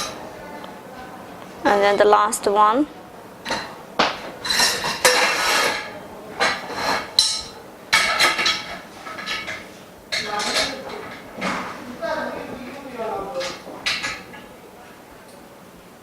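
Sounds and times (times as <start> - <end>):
metal bars knocking and clinking: 7.2 - 11.2.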